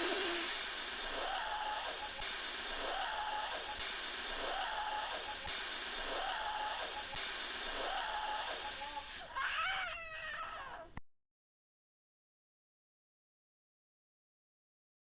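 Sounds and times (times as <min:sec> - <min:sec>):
air pump hiss: 0:00.0 - 0:09.4.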